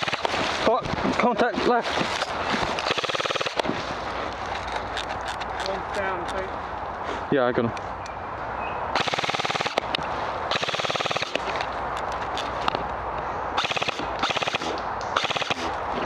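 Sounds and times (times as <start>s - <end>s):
airsoft guns firing full-auto: 0.0s - 0.3s, 2.9s - 3.7s, 9.0s - 9.8s, 10.5s - 11.4s, 13.6s - 15.7s.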